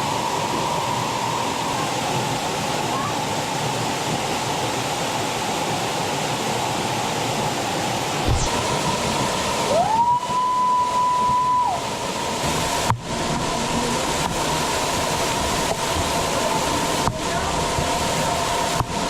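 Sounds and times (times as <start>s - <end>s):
waterfall rushing: 0.0s - 19.0s
whistle-like tone: 9.8s - 11.8s.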